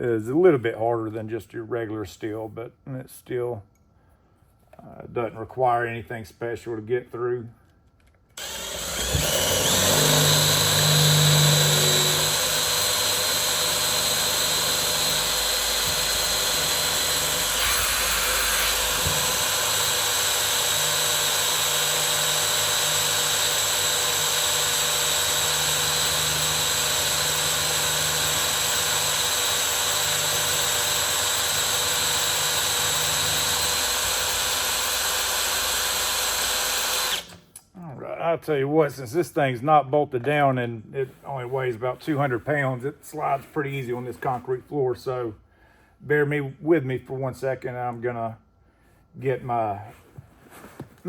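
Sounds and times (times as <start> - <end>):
electric drill whining: 8.4 - 37.5.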